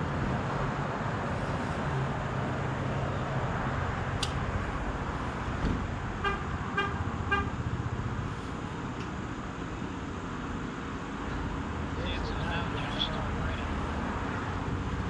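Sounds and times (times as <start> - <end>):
sharp click: 4.2 - 4.4.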